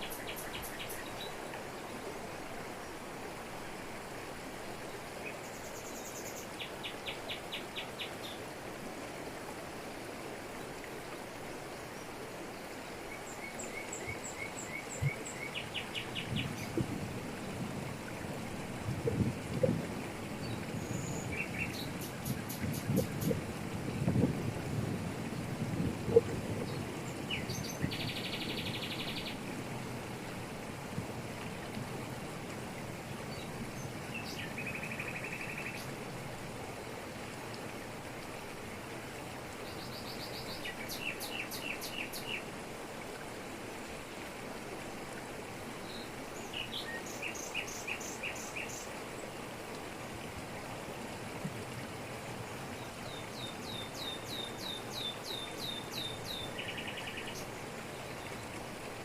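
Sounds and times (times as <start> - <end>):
forest birds calling: 0.0 - 1.4, 26.6 - 29.4, 52.8 - 58.3
waterfall rushing over rocks: 0.0 - 59.0.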